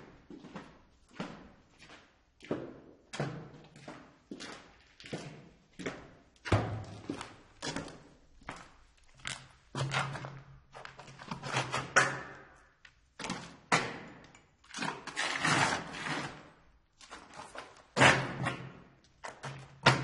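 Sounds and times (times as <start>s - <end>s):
footsteps on concrete: 0.0s - 11.4s.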